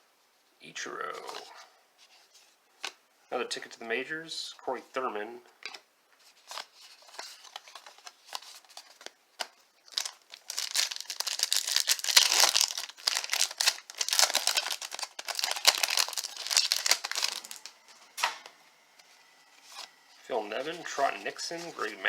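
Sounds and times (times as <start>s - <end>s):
wrapper tearing and crinkling: 6.4s - 17.8s.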